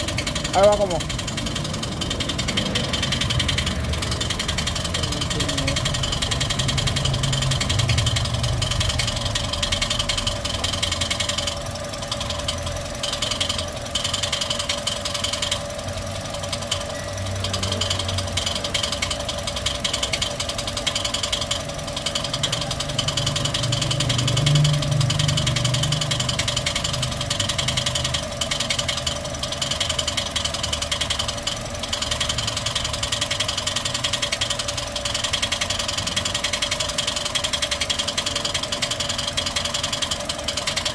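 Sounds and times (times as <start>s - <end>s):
engine idling: 0.0s - 40.9s
engine ticking clatter: 0.0s - 40.9s.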